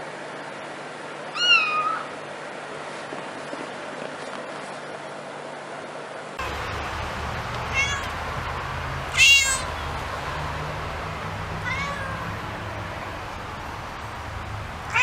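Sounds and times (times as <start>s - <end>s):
cat meowing: 1.3s - 2.2s, 7.7s - 8.2s, 9.1s - 9.8s, 11.6s - 12.4s
steady low hum: 2.0s - 15.0s.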